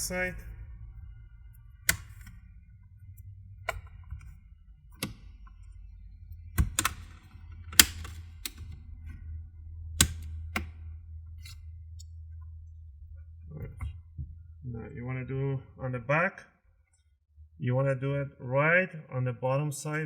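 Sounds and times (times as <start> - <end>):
low steady hum: 0.0 - 20.0
plastic clips snapping loose: 6.6 - 9.2, 10.0 - 10.8.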